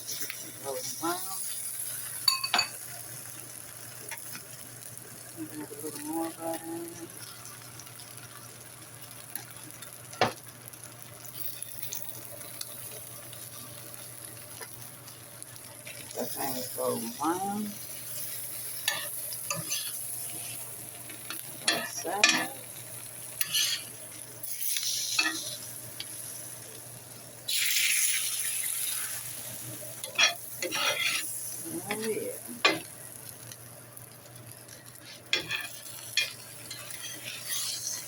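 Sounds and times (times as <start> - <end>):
tacos sizzling on a griddle: 0.0 - 38.0
spatula scraping griddle: 17.9 - 22.5, 23.4 - 26.1, 30.0 - 32.8, 34.9 - 38.0.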